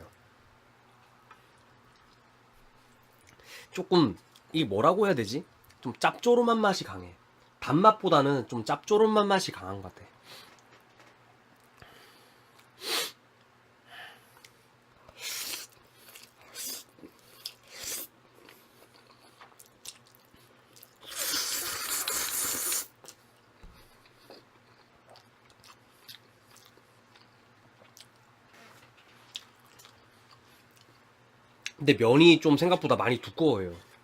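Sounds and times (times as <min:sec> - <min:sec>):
chewing noodles: 0:23.9 - 0:28.2.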